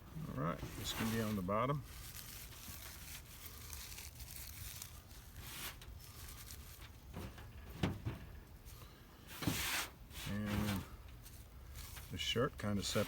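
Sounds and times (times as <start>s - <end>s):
wood shavings rustling: 0.7s - 6.9s.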